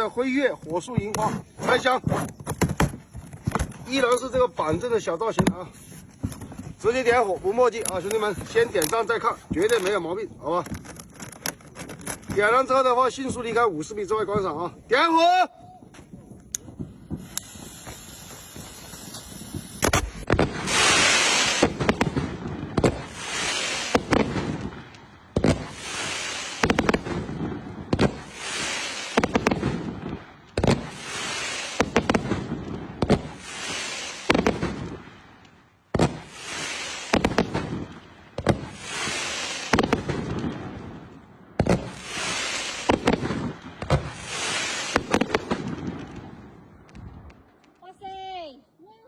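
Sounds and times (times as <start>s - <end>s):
firework hiss: 15.8s - 46.8s
firework launch bangs: 15.8s - 47.3s.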